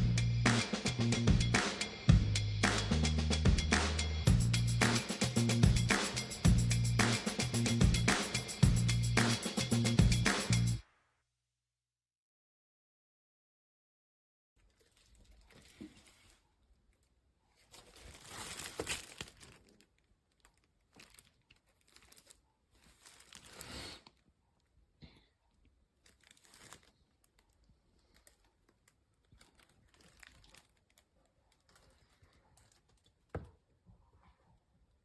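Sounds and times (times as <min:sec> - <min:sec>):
crinkling and rustling: 0:14.6 - 0:34.6.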